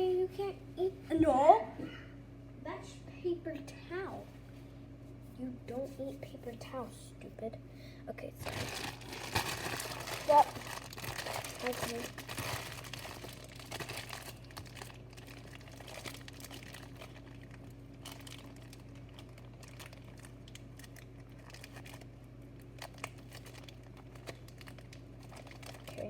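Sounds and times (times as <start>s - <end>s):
low steady hum: 0.0s - 26.0s
packaging crinkling: 8.4s - 26.0s.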